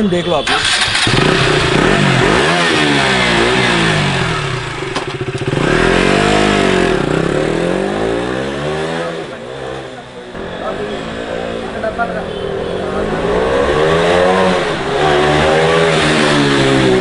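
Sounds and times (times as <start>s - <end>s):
motorcycle engine revving: 0.4s - 17.0s.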